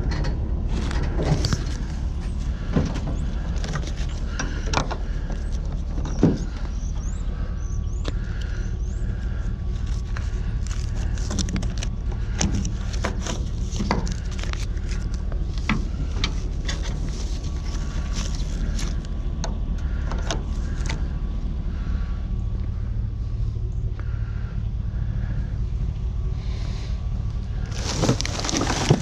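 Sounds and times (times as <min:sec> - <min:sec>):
steady low rumble: 0:00.0 - 0:29.0
scrap items knocking and clattering: 0:27.7 - 0:29.0.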